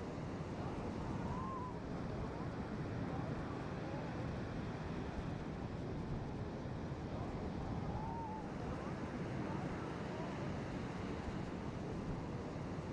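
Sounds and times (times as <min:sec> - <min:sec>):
low rushing outdoor noise: 0:07.2 - 0:12.9.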